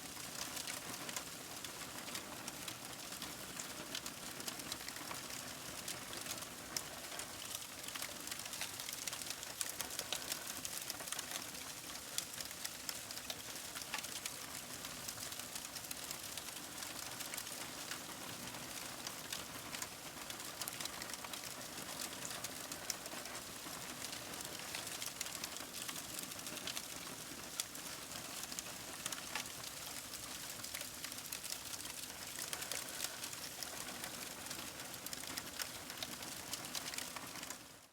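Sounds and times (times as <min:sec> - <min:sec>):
paper burning and crackling: 0:07.1 - 0:17.9, 0:20.8 - 0:37.6.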